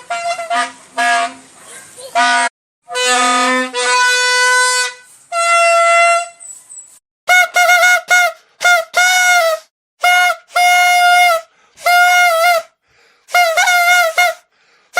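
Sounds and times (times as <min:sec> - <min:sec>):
toy trumpet buzzy toots: 0:02.3 - 0:06.4, 0:07.3 - 0:12.7, 0:13.3 - 0:14.5.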